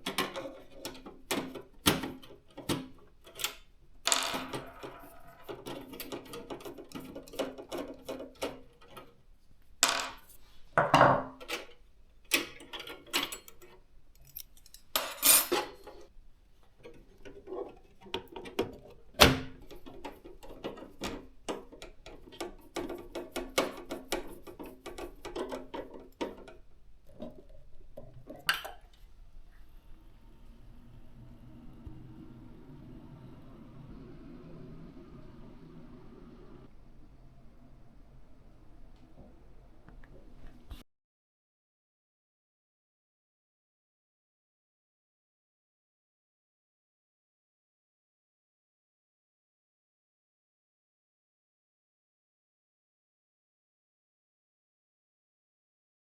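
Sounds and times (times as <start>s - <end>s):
metal and plastic rattles: 0.0s - 9.2s, 16.8s - 28.4s.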